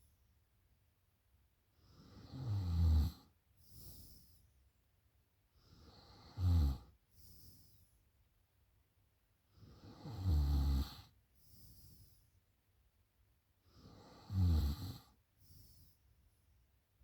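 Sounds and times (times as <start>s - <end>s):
woman snoring: 1.9s - 3.2s, 9.7s - 11.1s, 13.8s - 15.1s.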